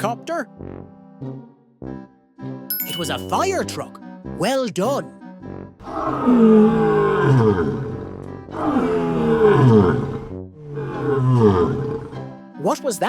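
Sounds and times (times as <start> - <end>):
light background music: 0.0 - 0.5, 2.7 - 9.7, 12.2 - 13.0
lion roaring: 5.8 - 12.2.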